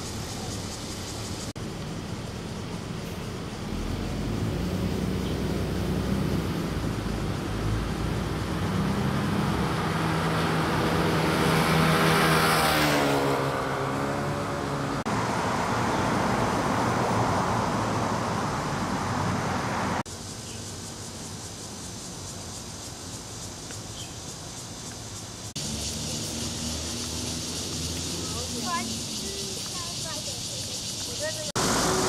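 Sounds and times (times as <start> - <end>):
street traffic: 0.0 - 32.0
vehicle passing close: 3.1 - 20.0, 25.5 - 29.7, 30.8 - 32.0.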